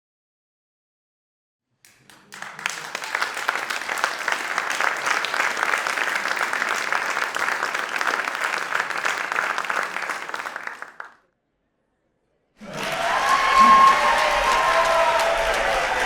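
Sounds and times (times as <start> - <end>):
crowd applause: 1.9 - 11.2, 12.6 - 16.0.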